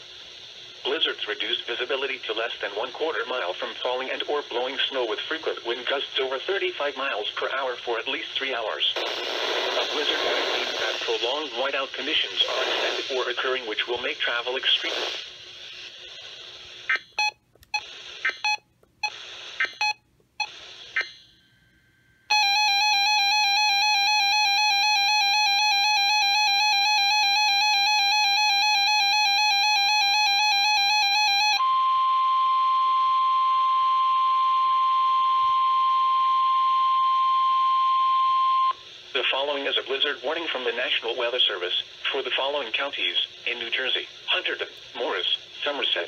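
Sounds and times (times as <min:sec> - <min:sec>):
steady single-pitch alarm tone: 0:19.6 - 0:38.8.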